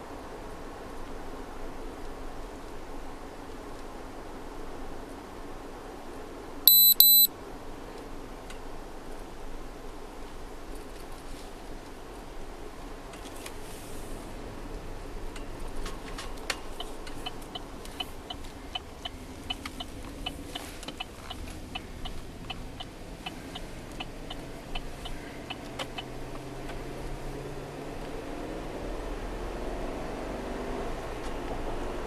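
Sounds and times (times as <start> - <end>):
engine and road hum: 0.0 - 32.0
turn signal clicking: 6.7 - 7.3, 16.3 - 27.2.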